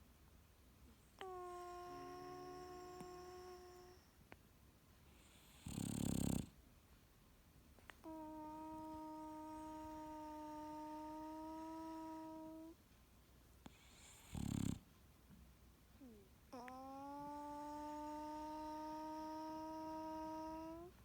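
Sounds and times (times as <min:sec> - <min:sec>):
dog snoring: 0:01.2 - 0:04.0, 0:05.2 - 0:06.6, 0:08.0 - 0:12.8, 0:13.7 - 0:14.9, 0:16.0 - 0:20.9.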